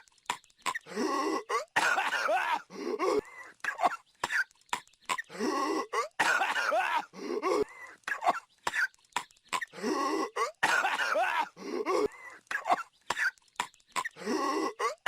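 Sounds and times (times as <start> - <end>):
cartoon voice coughing: 9.6 - 13.4, 14.0 - 15.0.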